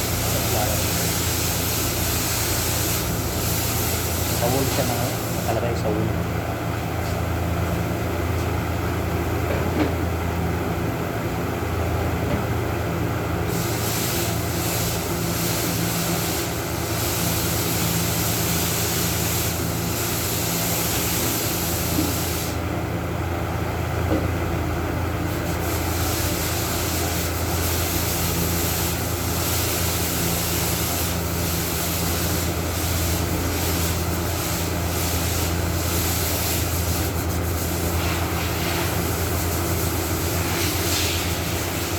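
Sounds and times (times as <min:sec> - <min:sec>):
scratchy sanding strokes: 0:25.5 - 0:41.9.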